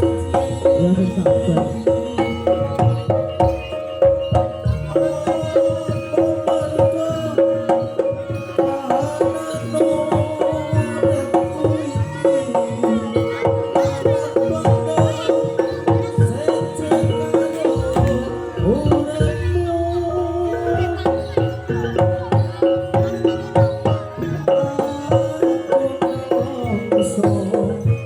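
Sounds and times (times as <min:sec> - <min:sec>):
hand drums fast beat: 0:00.0 - 0:28.0.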